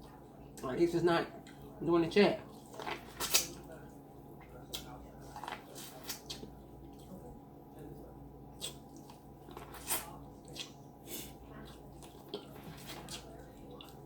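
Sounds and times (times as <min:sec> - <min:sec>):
wet chewing and smacking: 0:08.5 - 0:14.0.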